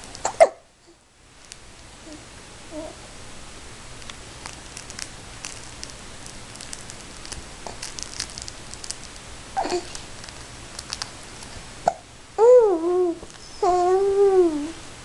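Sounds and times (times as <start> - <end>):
faint crackling and rustling clicks: 1.4 - 1.9, 3.9 - 11.6.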